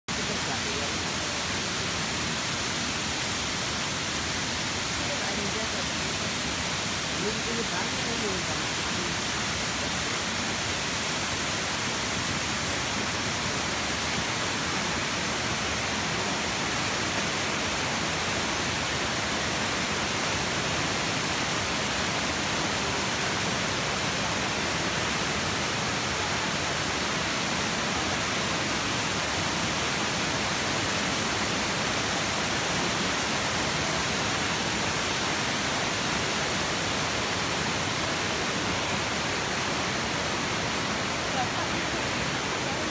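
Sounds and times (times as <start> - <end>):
waterfall rushing: 0.1 - 42.9.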